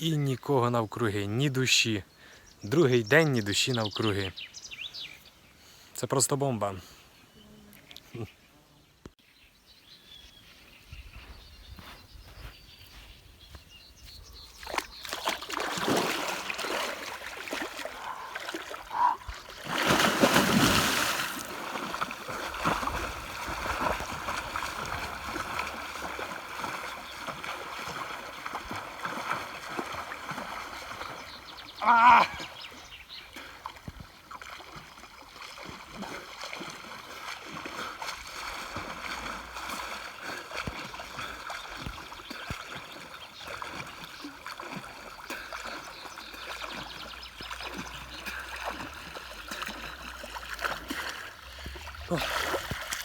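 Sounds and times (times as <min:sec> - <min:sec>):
splashing in river water: 0:14.4 - 0:53.0
person exclaiming: 0:31.8 - 0:32.5.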